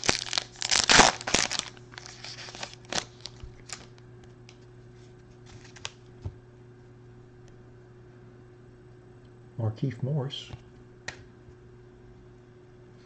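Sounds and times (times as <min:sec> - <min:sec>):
wrapper tearing and crinkling: 0:00.0 - 0:04.0.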